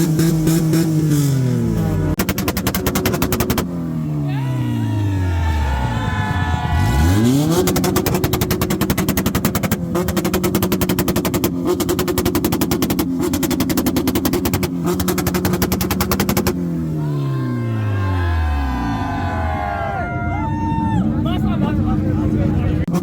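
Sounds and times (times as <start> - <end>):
car engine revving: 0.0 - 17.0
exhaust pops and bangs: 2.1 - 3.7.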